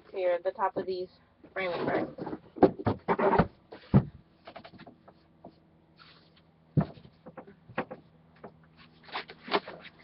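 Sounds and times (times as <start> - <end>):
wooden shelf boards knocking: 2.2 - 5.6, 6.8 - 8.6.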